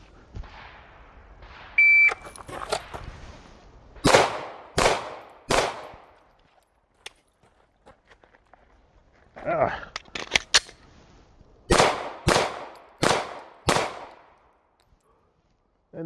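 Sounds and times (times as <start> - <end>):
shot timer beep: 1.8 - 2.2
pistol shots: 4.0 - 6.2, 11.7 - 14.3.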